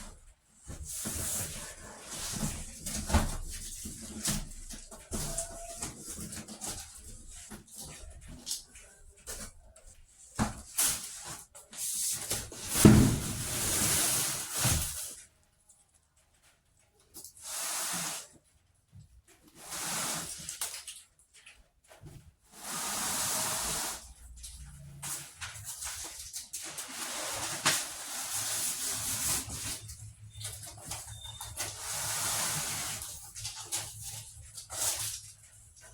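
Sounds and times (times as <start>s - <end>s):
packaging rustling and scraping: 0.7s - 15.3s, 24.3s - 35.9s.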